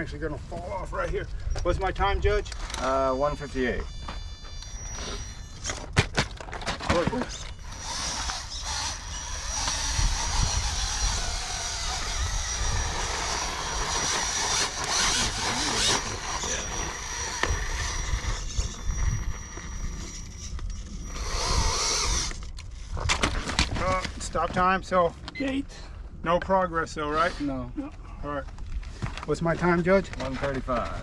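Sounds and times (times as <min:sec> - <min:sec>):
electric motor whining: 0:02.5 - 0:23.0.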